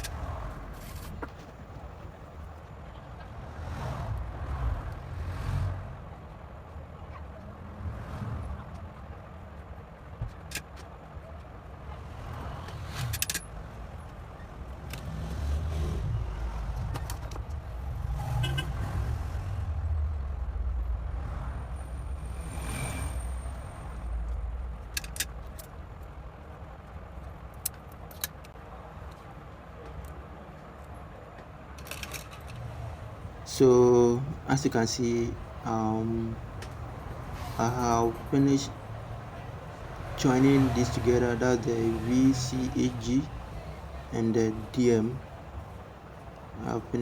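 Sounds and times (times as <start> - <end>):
low uneven rumble: 19.0 - 26.8, 33.0 - 47.0.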